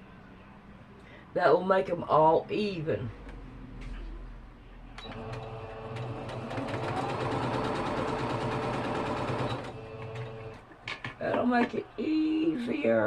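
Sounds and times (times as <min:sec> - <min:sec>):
sewing machine stitching: 0:05.0 - 0:10.6.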